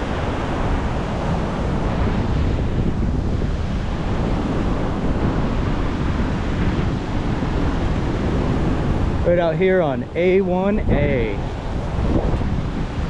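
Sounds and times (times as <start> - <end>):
rough ocean surf: 0.0 - 13.0
wind buffeting microphone: 0.0 - 13.0.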